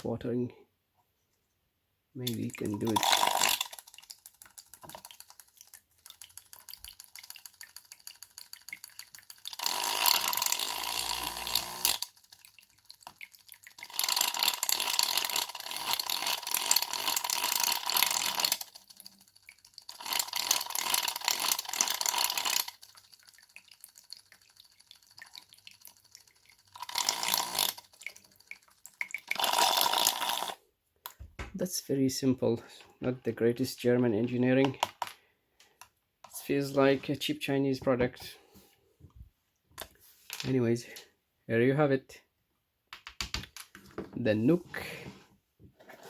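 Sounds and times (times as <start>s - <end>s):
water gurgling: 2.3s - 4.1s
small electric pump motor: 2.8s - 3.8s, 9.5s - 12.1s, 13.8s - 18.7s, 19.9s - 22.8s, 26.8s - 27.9s, 29.3s - 30.6s.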